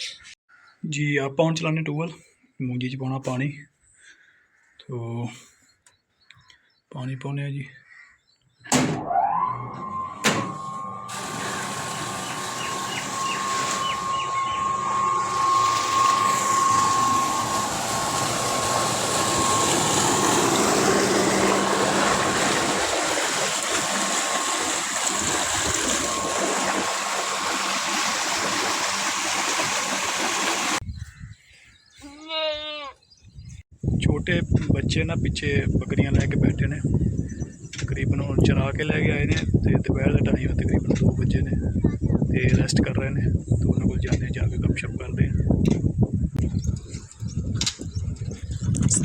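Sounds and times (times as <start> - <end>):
pump starting with whine: 8.7 - 30.8
water gushing from pipe: 10.5 - 30.8.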